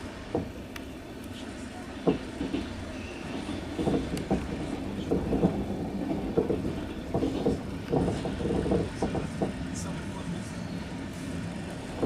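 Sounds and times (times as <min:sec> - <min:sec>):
train rumble inside carriage: 0:00.0 - 0:12.0
wheels clacking over rail joints: 0:02.0 - 0:10.3, 0:11.5 - 0:12.0.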